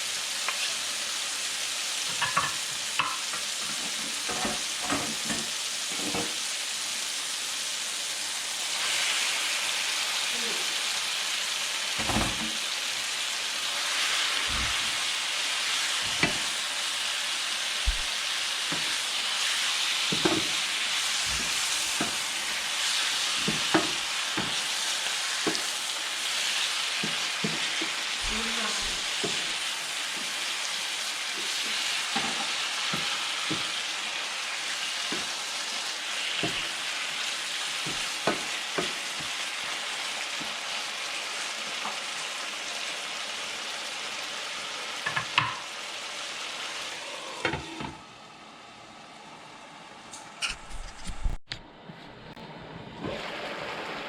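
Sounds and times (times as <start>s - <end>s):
food sizzling in a pan: 0.0s - 50.8s, 52.8s - 54.0s.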